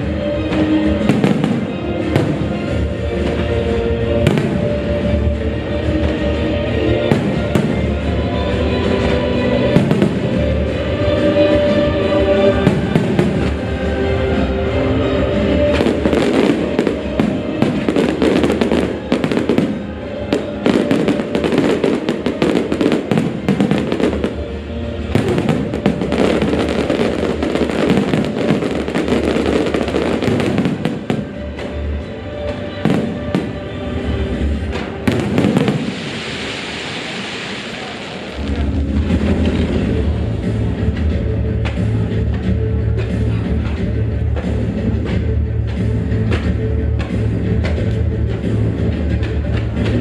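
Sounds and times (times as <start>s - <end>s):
fireworks bursting and crackling: 0.0s - 5.2s, 7.0s - 11.5s, 12.1s - 40.3s
music soundtrack: 0.0s - 50.0s.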